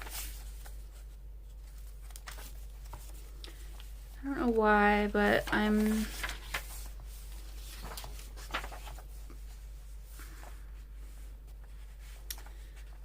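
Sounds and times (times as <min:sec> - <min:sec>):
low steady hum: 0:00.0 - 0:13.0
paper rustling and tapping: 0:01.6 - 0:04.7, 0:05.3 - 0:06.9, 0:07.6 - 0:09.4.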